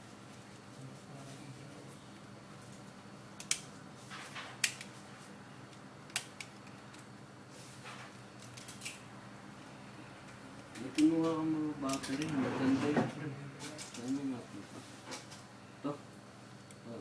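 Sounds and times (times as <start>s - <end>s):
small sharp clicks and snaps: 3.4s - 3.7s.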